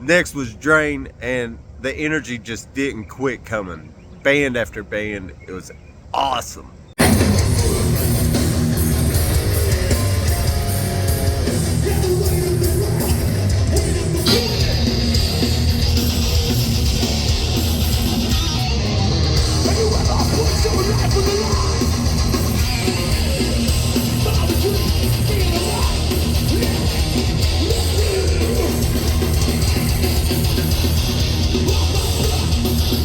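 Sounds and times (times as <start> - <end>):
distorted electric guitar: 7.0 - 33.0
live heavy band music: 7.0 - 33.0.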